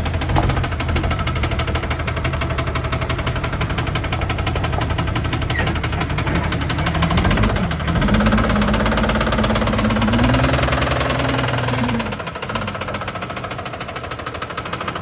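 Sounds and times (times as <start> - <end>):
diesel engine knocking: 0.0 - 15.0.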